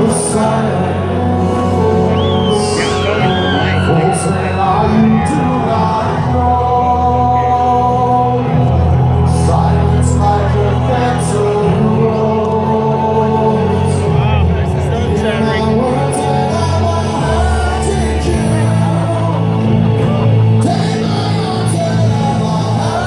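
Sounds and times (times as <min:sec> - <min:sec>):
person singing: 0:00.0 - 0:14.2.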